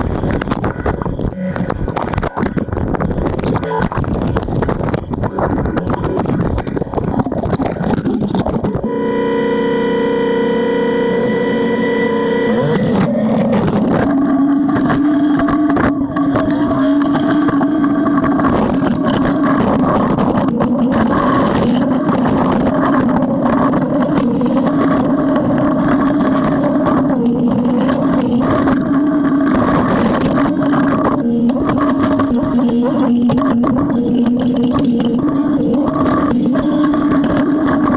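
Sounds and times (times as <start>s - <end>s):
diesel engine under load: 0.0s - 37.9s.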